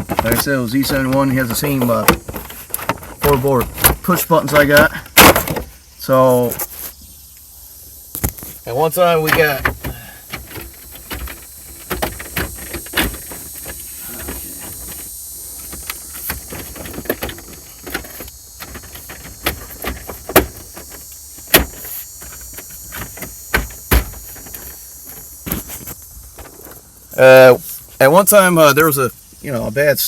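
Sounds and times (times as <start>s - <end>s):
plastic parts clicking and knocking: 0.0s - 5.7s
faint steady hiss: 0.0s - 30.0s.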